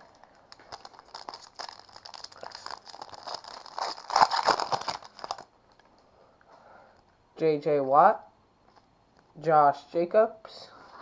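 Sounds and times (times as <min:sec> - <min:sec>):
foil wrapper tearing and crinkling: 0:00.5 - 0:05.5.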